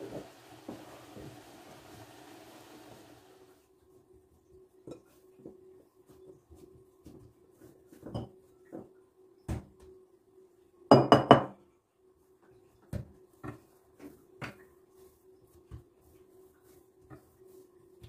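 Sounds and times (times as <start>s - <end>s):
dishes and cutlery clinking: 8.0s - 8.4s.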